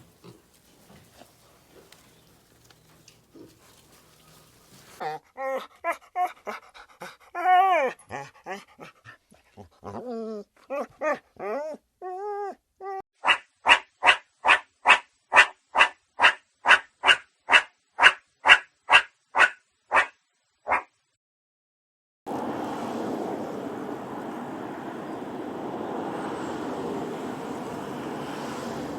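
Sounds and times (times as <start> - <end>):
dog whining and yelping: 5.0 - 6.6, 7.3 - 8.9, 9.6 - 13.0
dog barking: 13.2 - 20.9.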